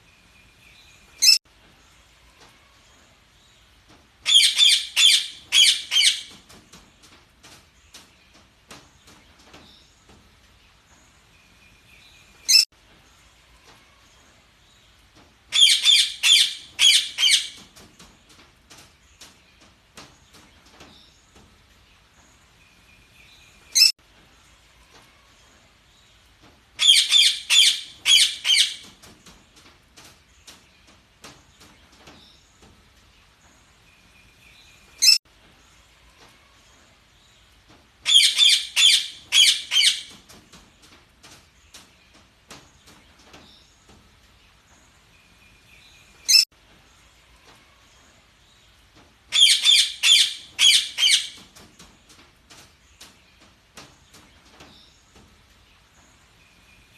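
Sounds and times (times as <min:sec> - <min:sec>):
budgerigars chirping: 0:04.3 - 0:06.3, 0:38.1 - 0:40.1, 0:49.3 - 0:51.4.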